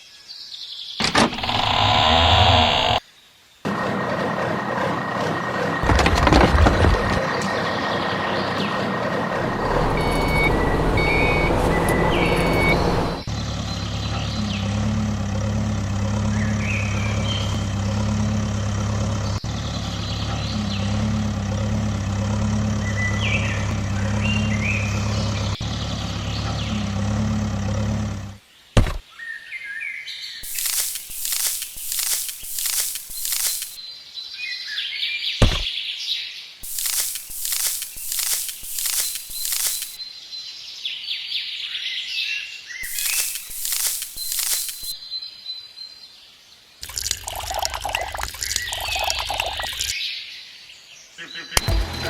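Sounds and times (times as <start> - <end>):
small model vehicle motors: 1.0 - 3.0, 30.4 - 33.8, 36.6 - 40.0, 42.8 - 45.0
birds chirping: 5.5 - 36.0, 36.6 - 52.0
electronic beeps: 9.8 - 13.3.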